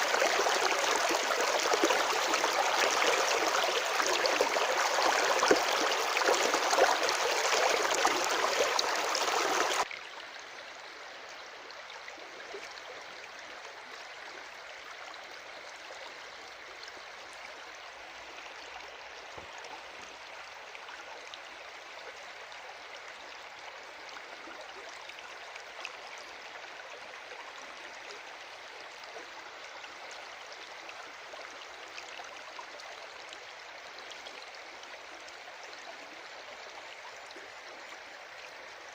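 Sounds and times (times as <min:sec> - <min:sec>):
water rushing: 0:00.0 - 0:09.9.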